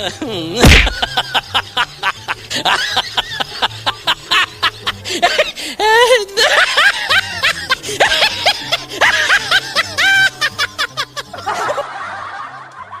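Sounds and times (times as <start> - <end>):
background music with bass line: 0.0 - 5.3
high-pitched snickering laughter: 0.0 - 13.0.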